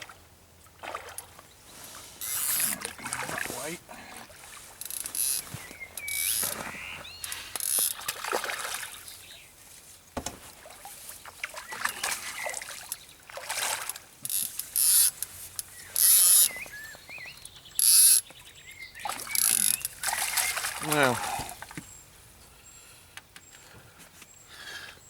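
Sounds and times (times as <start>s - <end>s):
fish thrashing water splashing: 4.3s - 9.0s, 10.5s - 14.8s, 19.0s - 21.8s
bird calls: 4.8s - 8.0s, 11.5s - 13.1s, 15.0s - 25.0s.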